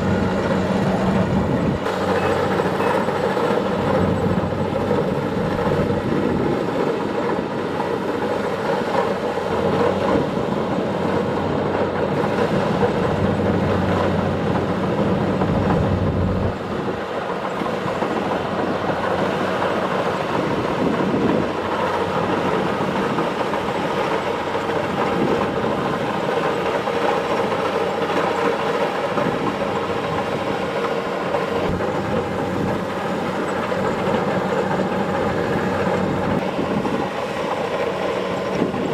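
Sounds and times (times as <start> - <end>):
combine harvester running: 0.0 - 38.9.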